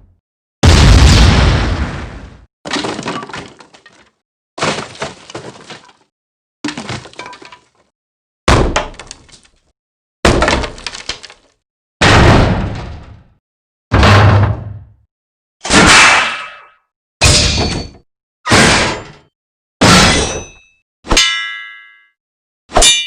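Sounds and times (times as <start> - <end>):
deep boom: 0.6 - 2.5.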